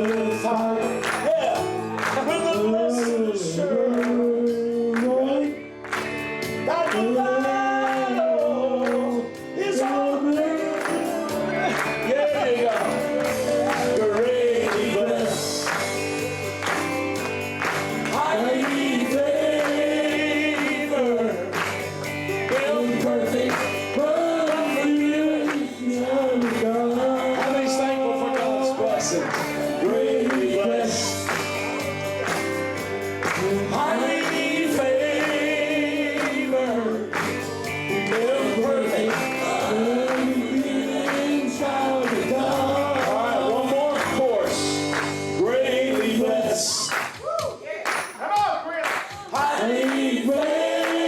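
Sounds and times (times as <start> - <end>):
two men singing gospel: 0.0 - 5.7, 6.6 - 47.2, 49.2 - 51.0
live instrumental backing: 0.0 - 47.6.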